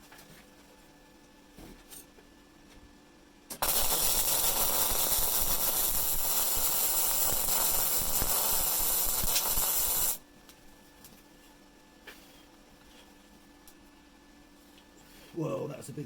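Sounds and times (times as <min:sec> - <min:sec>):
welding arc crackling hiss: 0:03.5 - 0:10.2.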